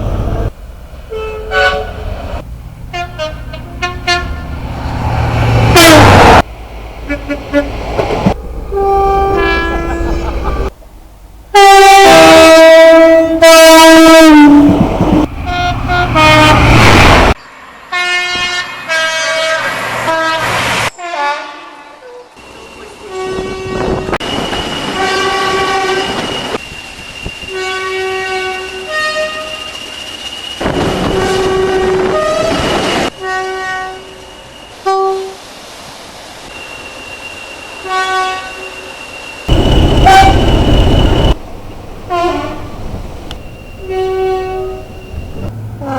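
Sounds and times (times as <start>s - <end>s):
two-tone train horn blasts: 1.1s - 2.0s, 2.9s - 4.6s, 5.7s - 6.4s, 7.1s - 7.8s, 8.7s - 10.5s, 11.5s - 14.8s, 15.5s - 16.8s, 17.9s - 22.3s, 23.0s - 24.3s, 24.9s - 26.3s, 27.5s - 29.7s, 30.6s - 34.2s, 34.8s - 35.4s, 37.8s - 38.8s, 39.5s - 41.4s, 42.1s - 42.7s, 43.8s - 45.9s.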